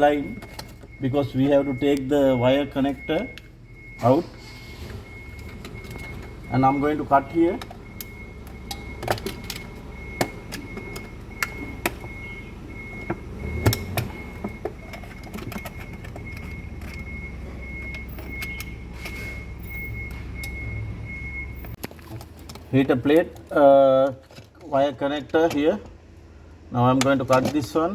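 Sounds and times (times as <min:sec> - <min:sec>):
hand tools clicking and snipping: 0:13.0 - 0:17.1.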